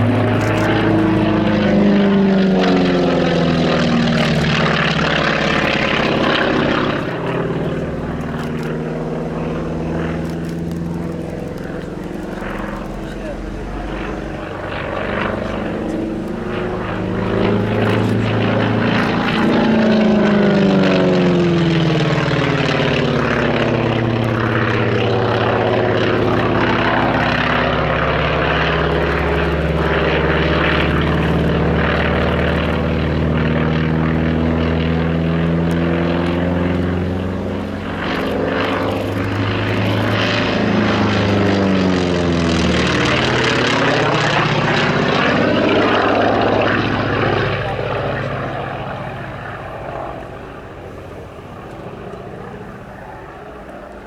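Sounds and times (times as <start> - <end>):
propeller planes droning: 0.0 - 54.0.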